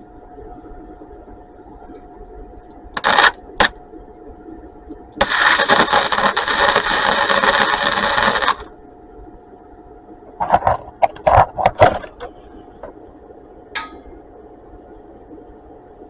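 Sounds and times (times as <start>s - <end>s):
welder crackling: 2.9s - 3.8s, 5.2s - 8.7s.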